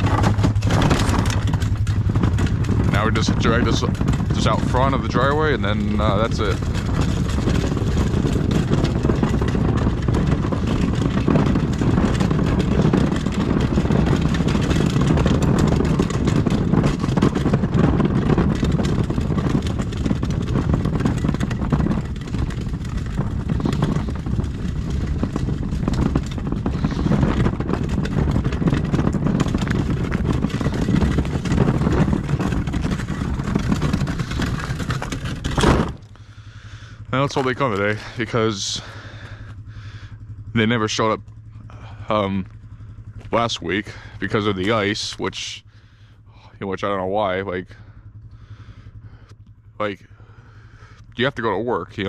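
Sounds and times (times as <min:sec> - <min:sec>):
wheeled bin rolling: 0:00.0 - 0:36.3, 0:37.1 - 0:39.5.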